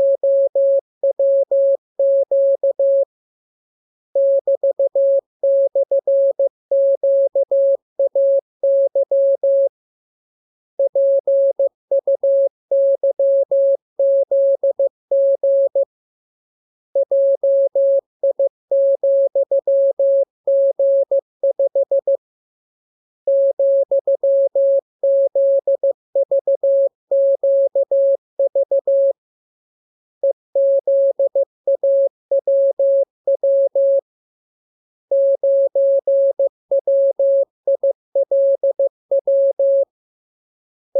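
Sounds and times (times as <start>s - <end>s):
morse code beeps: 35.1s - 39.9s.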